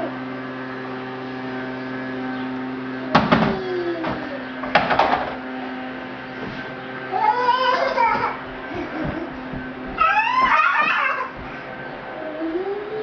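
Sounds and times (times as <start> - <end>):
steady electrical hum: 0.0 - 13.0
knocking and clattering: 3.2 - 5.4.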